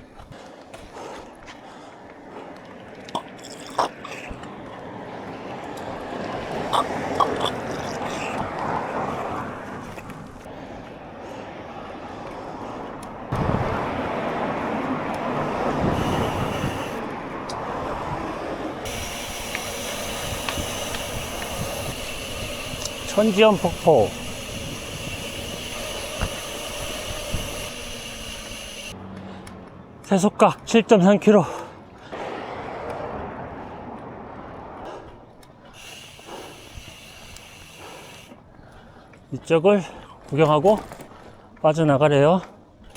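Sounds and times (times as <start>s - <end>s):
wind buffeting microphone: 9.5s - 28.9s
steady high hiss: 15.7s - 17.1s, 18.9s - 29.0s, 35.8s - 38.4s.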